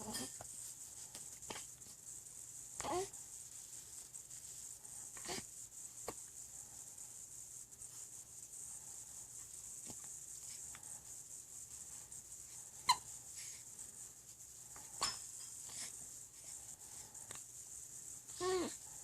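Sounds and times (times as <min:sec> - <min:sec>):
faint hiss: 0:00.0 - 0:19.0.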